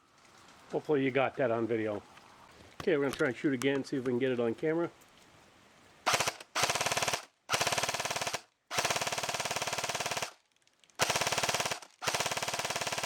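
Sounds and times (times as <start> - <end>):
airsoft gun firing bursts: 6.1 - 10.4, 11.0 - 13.0.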